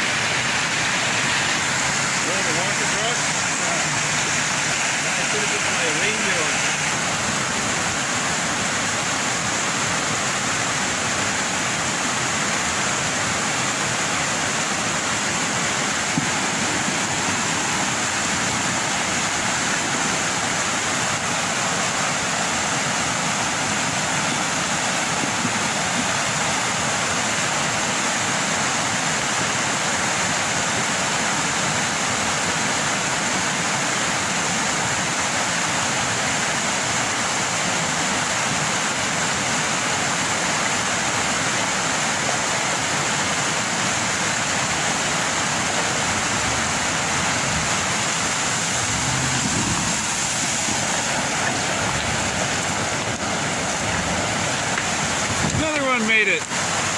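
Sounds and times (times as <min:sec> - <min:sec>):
water rushing: 0:00.0 - 0:56.9.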